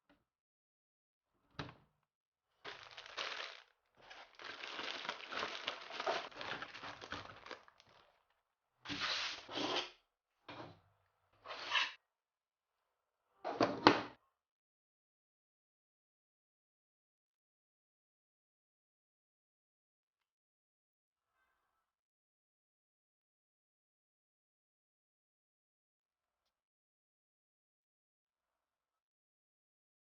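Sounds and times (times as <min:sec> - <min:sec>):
plastic packaging crinkling and tearing: 0:02.7 - 0:08.3.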